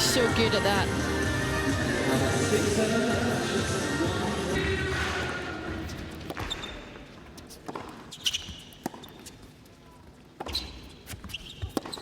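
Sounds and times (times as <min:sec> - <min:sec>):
sneaker squeaks: 0:05.9 - 0:12.0
tennis ball bounces: 0:06.2 - 0:06.8, 0:07.4 - 0:09.4, 0:10.4 - 0:12.0.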